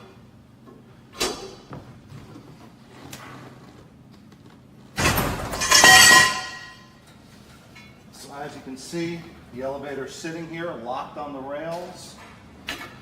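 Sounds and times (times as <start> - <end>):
metallic clatter and scrape: 5.0 - 8.0.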